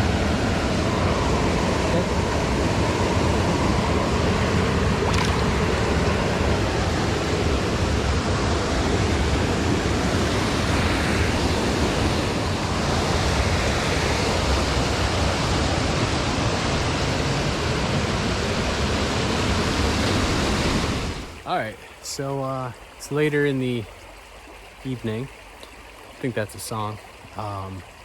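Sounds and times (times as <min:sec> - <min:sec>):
stream rushing over rocks: 0:04.9 - 0:06.9.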